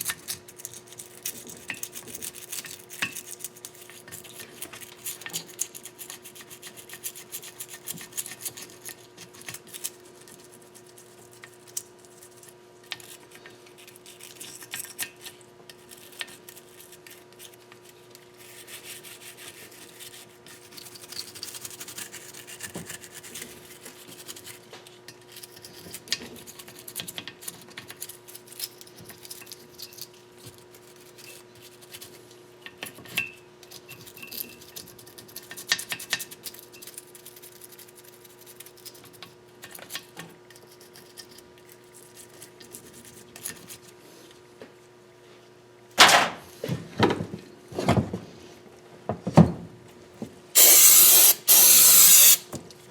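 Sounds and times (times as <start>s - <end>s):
tool clicks and clinks: 50.6s - 52.4s.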